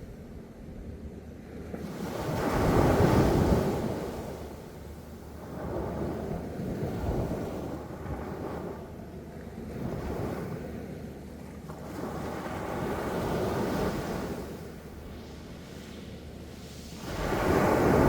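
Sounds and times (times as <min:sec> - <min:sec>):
sea waves breaking: 0:12.6 - 0:18.0
wind buffeting microphone: 0:13.3 - 0:18.0.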